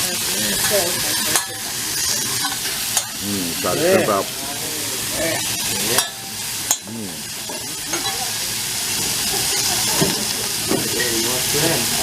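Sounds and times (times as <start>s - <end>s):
food sizzling on a griddle: 0.0s - 12.0s.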